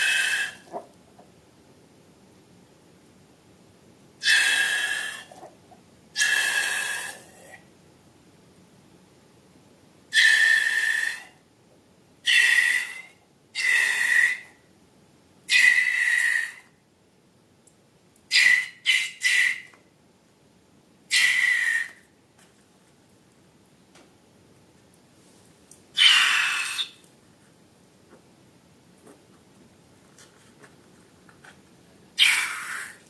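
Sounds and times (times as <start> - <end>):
air squealing out of balloon: 0.0 - 0.8, 6.2 - 7.4, 32.2 - 33.0.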